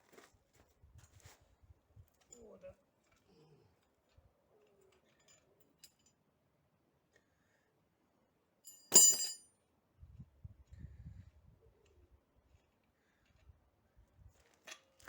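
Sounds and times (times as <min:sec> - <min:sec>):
sharp metal clank: 0:08.7 - 0:09.4.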